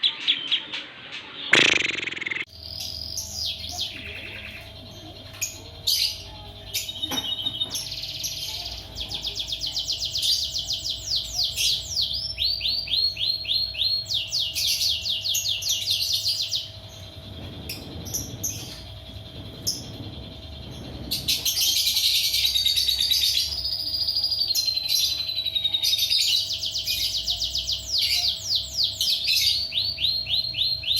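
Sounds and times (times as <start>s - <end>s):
lovebird chattering song: 1.4s - 16.3s.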